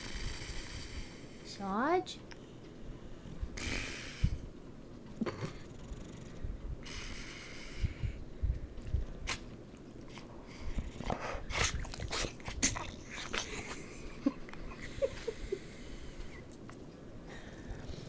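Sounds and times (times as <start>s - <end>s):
dog snoring: 5.5s - 7.7s.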